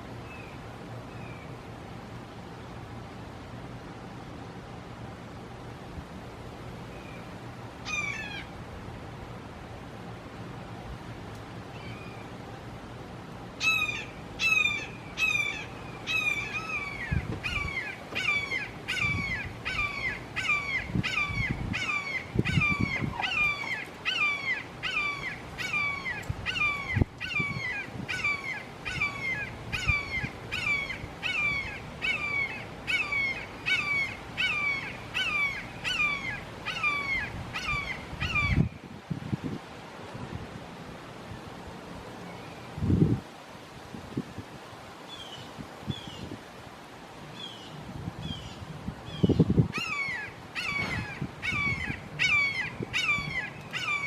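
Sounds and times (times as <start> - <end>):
hawk screaming calls: 13.6 - 38.6, 49.7 - 54.0.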